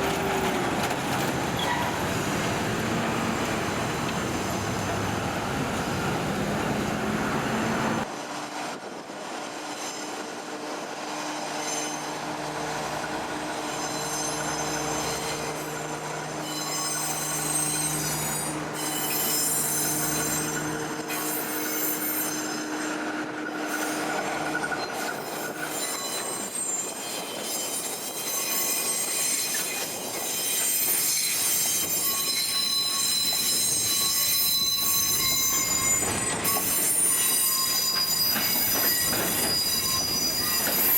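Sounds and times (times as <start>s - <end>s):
train wheels squealing: 1.4s - 2.4s, 9.6s - 40.9s.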